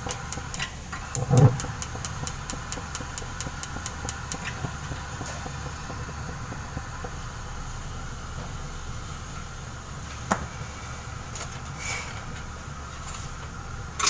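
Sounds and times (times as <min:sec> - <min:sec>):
gas stove igniter clicking: 0:00.0 - 0:10.5
steady low hum: 0:00.0 - 0:14.0.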